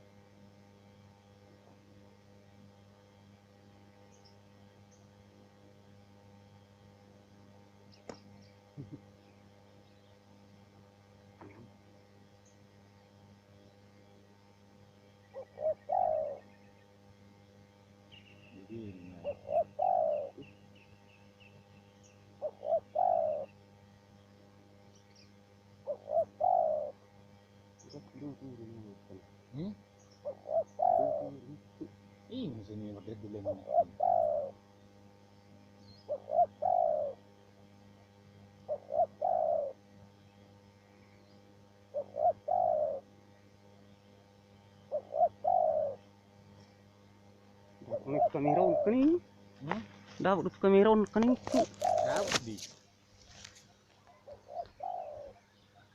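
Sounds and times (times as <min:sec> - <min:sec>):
dove cooing: 0:15.3 - 0:16.7, 0:18.5 - 0:20.6, 0:22.2 - 0:23.6, 0:25.8 - 0:27.1, 0:27.8 - 0:34.7, 0:36.0 - 0:37.4, 0:38.6 - 0:39.9, 0:41.8 - 0:43.2, 0:44.7 - 0:46.1, 0:47.8 - 0:49.8, 0:51.2 - 0:52.6, 0:53.4 - 0:55.9.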